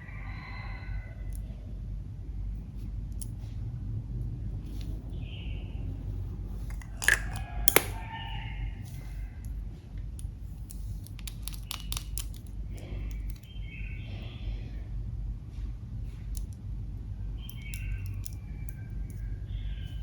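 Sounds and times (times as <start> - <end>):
steady low hum: 0.0 - 20.0
sharp clicks and taps: 10.7 - 12.5.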